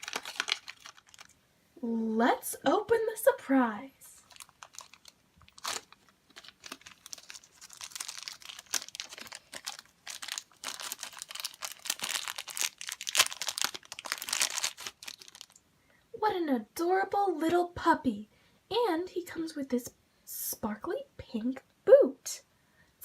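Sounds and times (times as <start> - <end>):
toy packaging crackling: 0.0 - 1.4, 4.1 - 15.6.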